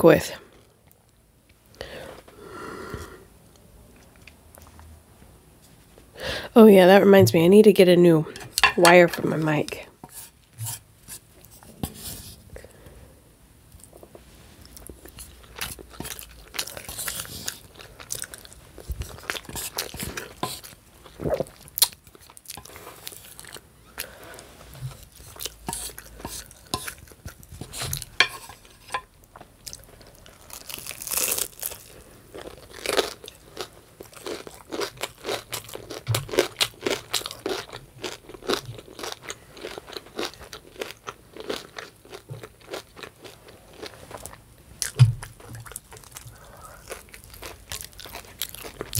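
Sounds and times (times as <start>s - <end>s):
person chewing crunchy food: 13.8s - 48.9s.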